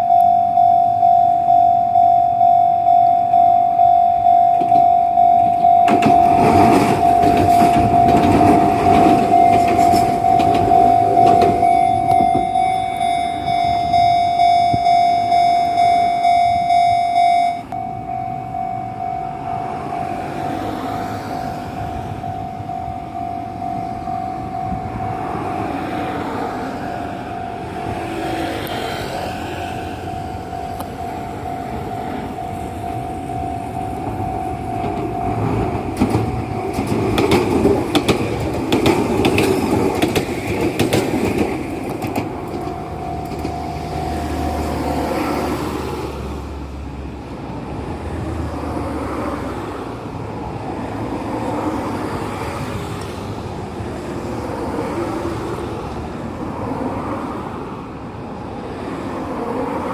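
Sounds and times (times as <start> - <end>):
level-crossing warning bell: 0.0 - 46.3
train wheels clacking over rail joints: 5.9 - 12.7, 34.7 - 44.9.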